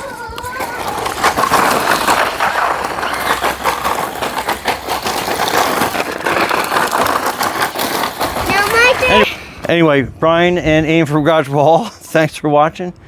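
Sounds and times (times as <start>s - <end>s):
tyres crunching over ground: 0.0s - 9.8s.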